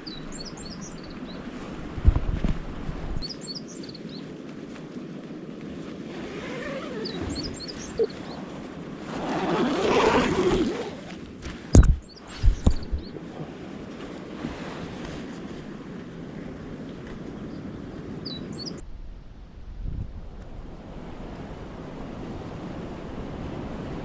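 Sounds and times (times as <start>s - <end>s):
bird chirping: 6.7s - 8.4s.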